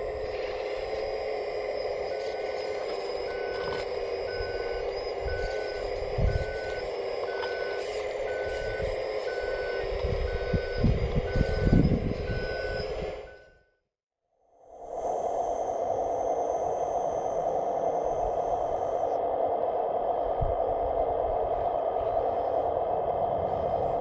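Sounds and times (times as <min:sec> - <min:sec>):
electric drive whine: 0:00.0 - 0:13.7, 0:14.6 - 0:24.0
reversing beeper: 0:00.0 - 0:13.8.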